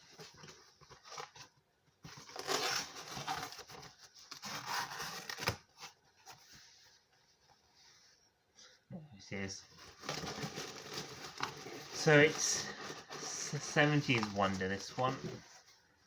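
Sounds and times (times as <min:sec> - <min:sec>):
packaging rustling and tearing: 0:00.0 - 0:06.4, 0:09.8 - 0:15.8.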